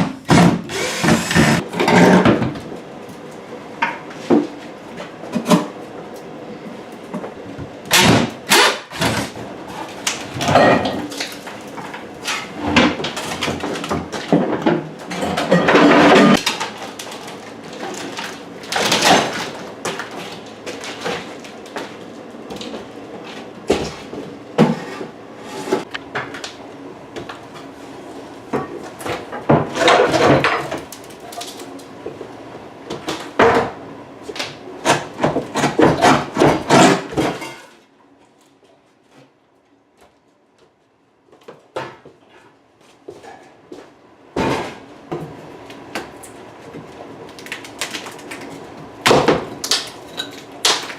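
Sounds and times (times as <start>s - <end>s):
knocks and bangs of hand tools: 0.0s - 2.6s, 49.0s - 49.5s.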